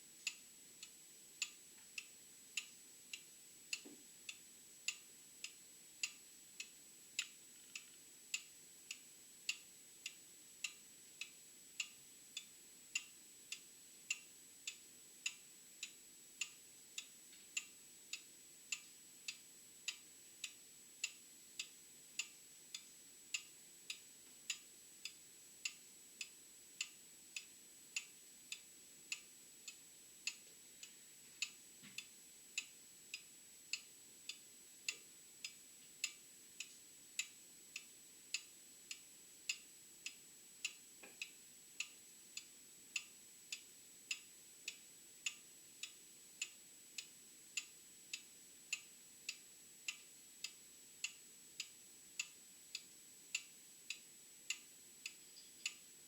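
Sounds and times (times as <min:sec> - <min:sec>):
mechanical clock ticking: 0:00.2 - 0:55.9
faint high whine: 0:55.0 - 0:56.0.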